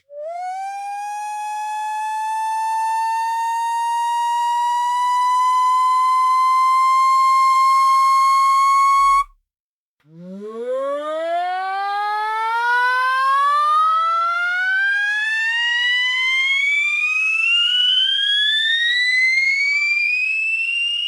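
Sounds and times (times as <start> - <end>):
electric lift motor whine: 5.8 - 9.2.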